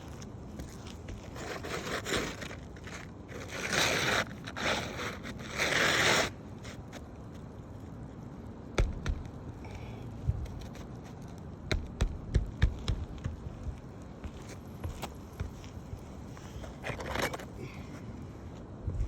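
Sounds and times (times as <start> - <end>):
scraping on roof shingles: 0.6 - 7.0, 10.4 - 17.5
sharp knocks: 8.8 - 9.3, 11.7 - 13.6.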